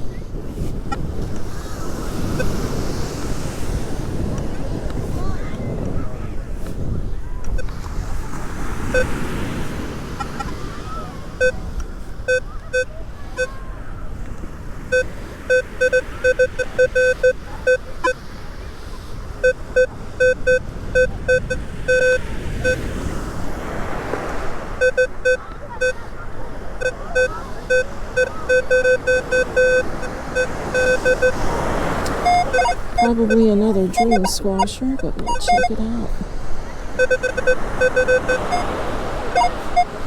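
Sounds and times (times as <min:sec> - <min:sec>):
wind buffeting microphone: 0:00.0 - 0:12.3
surf: 0:00.0 - 0:40.0
metal detector beeping: 0:08.9 - 0:09.2, 0:10.2 - 0:10.6, 0:11.4 - 0:13.6, 0:14.9 - 0:18.2, 0:19.4 - 0:22.9, 0:24.8 - 0:26.1, 0:26.8 - 0:36.1, 0:37.0 - 0:40.0.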